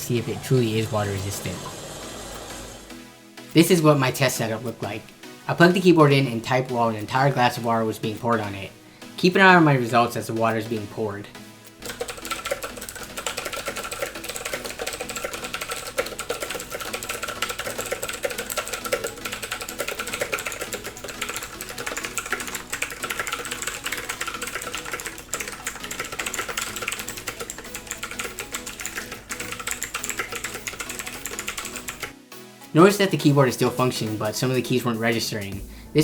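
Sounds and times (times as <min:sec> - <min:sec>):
fast mechanical keyboard typing: 0:11.8 - 0:32.1.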